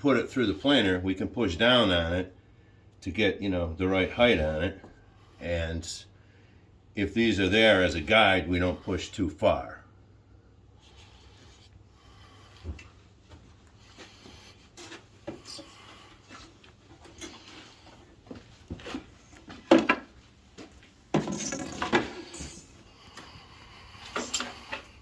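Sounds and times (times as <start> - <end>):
wood and metal parts clattering: 21.1 - 22.8, 24.0 - 24.9.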